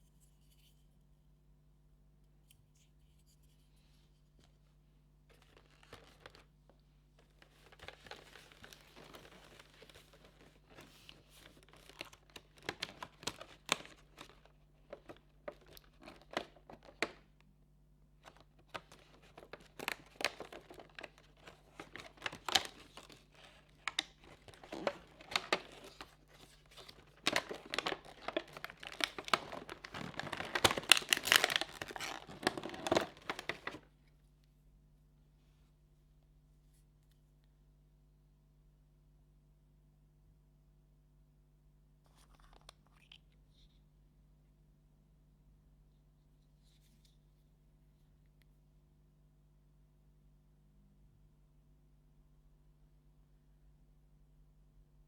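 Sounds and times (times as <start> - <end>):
packaging being torn open: 7.4 - 17.2, 18.2 - 33.8.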